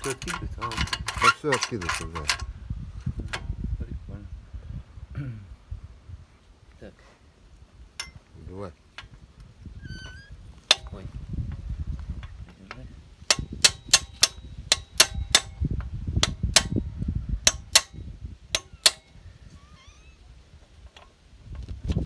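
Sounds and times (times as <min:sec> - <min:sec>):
dry moving part squeaking: 0:00.0 - 0:03.3, 0:08.9 - 0:15.4, 0:18.6 - 0:20.2
low rumble of movement: 0:00.0 - 0:06.7, 0:07.4 - 0:22.0.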